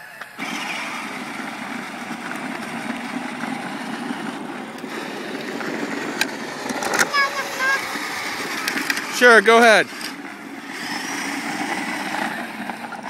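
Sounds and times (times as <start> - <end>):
plastic wheels rolling over ground: 0.0 - 13.0
toy bike electric motor: 0.0 - 13.0.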